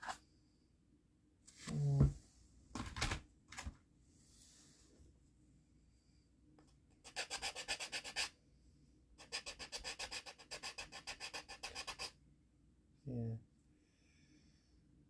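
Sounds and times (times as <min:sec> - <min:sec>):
hand sanding resin: 0:07.1 - 0:08.3, 0:09.2 - 0:12.1.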